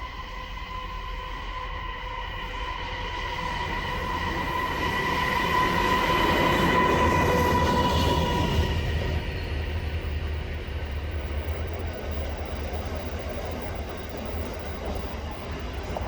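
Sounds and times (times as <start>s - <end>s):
high ringing squeal: 0.0s - 10.8s
train wheels rumbling on rail: 0.0s - 16.0s.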